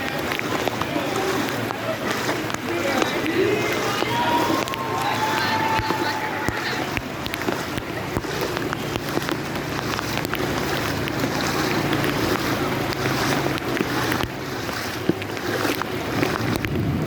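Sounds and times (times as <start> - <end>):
heavy rain pouring: 0.0 - 17.0
sharp raindrop hits: 15.9 - 17.0.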